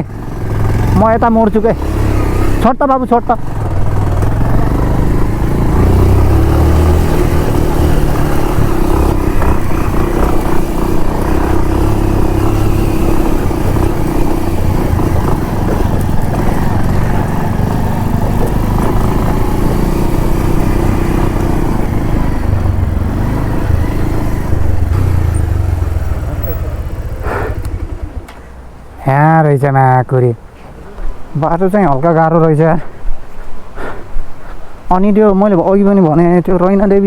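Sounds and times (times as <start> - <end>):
motorcycle engine running: 0.0 - 29.0.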